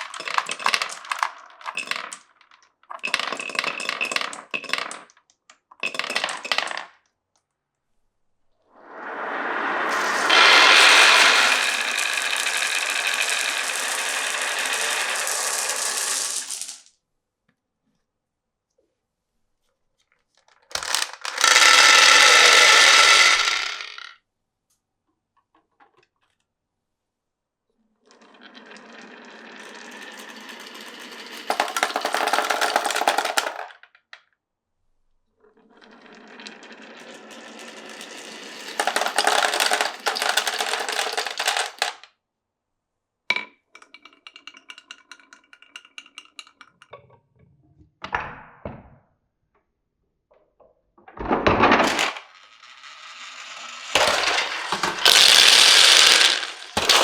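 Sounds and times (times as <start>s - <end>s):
marbles rolling on a marble run: 0.0s - 5.2s, 5.8s - 7.0s, 8.8s - 16.9s, 20.7s - 24.2s, 28.1s - 34.0s, 35.6s - 42.1s, 51.2s - 57.0s.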